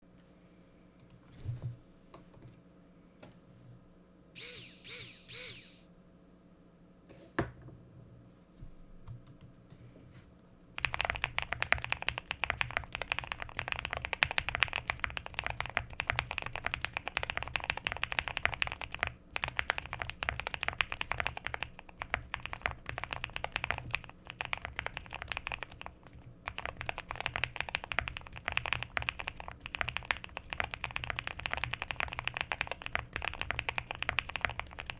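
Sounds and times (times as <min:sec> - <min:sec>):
typing on mechanical keyboard: 0:10.8 - 0:34.9.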